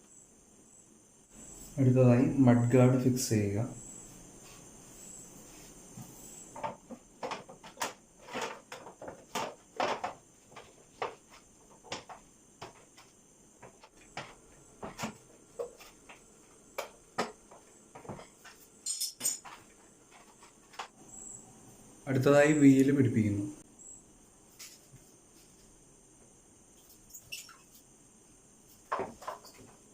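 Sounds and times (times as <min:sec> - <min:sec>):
metal tools clinking: 0:18.8 - 0:19.6.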